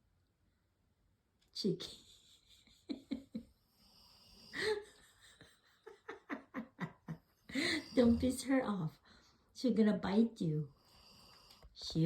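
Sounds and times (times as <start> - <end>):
person laughing softly: 4.6 - 8.3.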